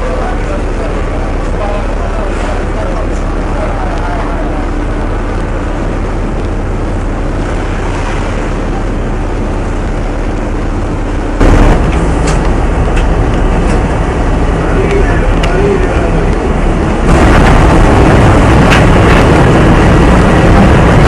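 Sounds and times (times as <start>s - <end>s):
ship engine droning: 0.0s - 21.0s
wind and sea noise: 0.0s - 21.0s
burst of noise on microphone: 11.3s - 21.0s.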